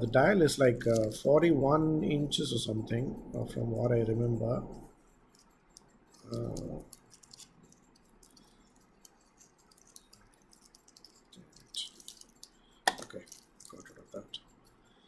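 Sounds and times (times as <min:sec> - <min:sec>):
watch and plastic packaging clicks: 0:05.4 - 0:14.1.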